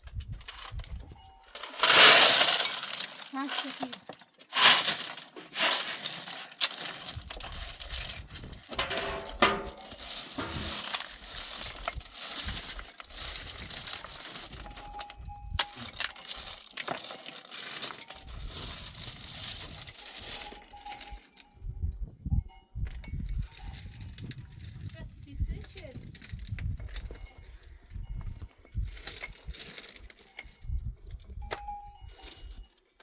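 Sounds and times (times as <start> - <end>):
hard objects clinking: 0.2 - 21.6.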